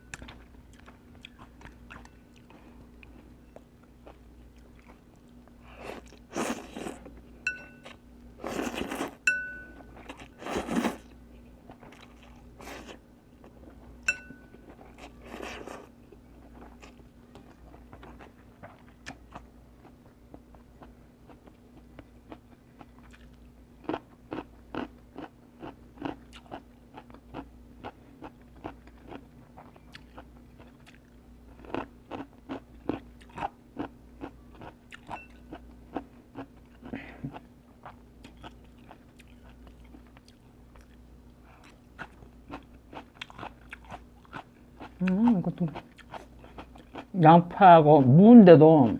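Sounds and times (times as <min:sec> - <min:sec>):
faint steady hum: 0:00.0 - 0:48.9
chewing crunchy food: 0:00.1 - 0:09.2, 0:10.0 - 0:13.8, 0:14.6 - 0:47.2.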